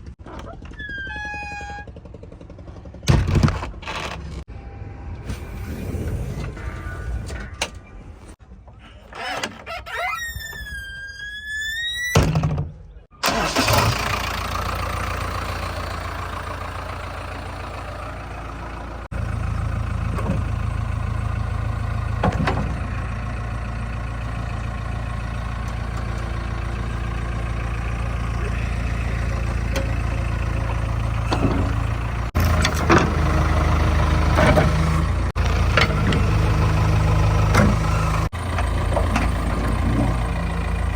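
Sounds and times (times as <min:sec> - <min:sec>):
diesel machinery engine drone: 0:13.2 - 0:40.9.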